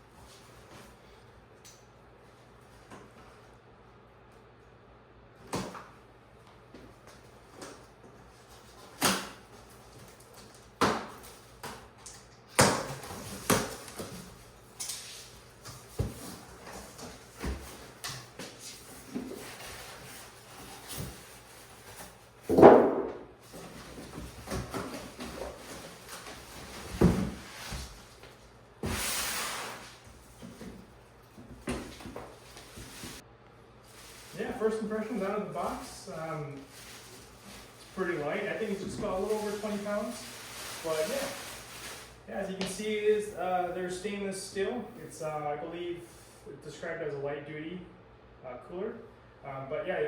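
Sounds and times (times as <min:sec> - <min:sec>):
knocks and thumps on packaging: 0:22.5 - 0:23.2
scraping and rustling: 0:33.9 - 0:42.2.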